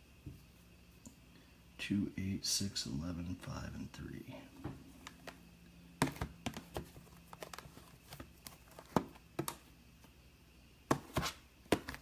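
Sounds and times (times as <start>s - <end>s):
boxes knocking on a table: 6.0s - 7.0s, 8.2s - 9.6s.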